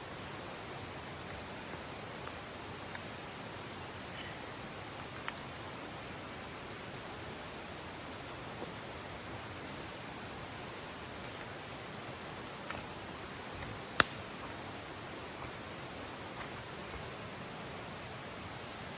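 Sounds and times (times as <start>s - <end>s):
campfire hissing and crackling: 0.0s - 18.9s
sharp pop of fire: 14.0s - 14.3s.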